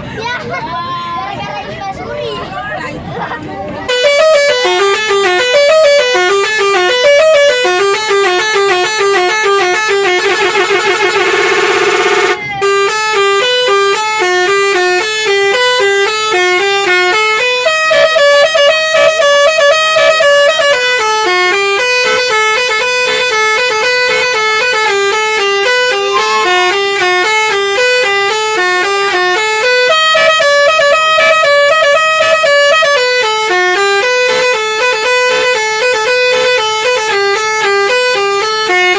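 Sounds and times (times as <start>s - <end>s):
musical bus air horns: 3.8s - 38.9s.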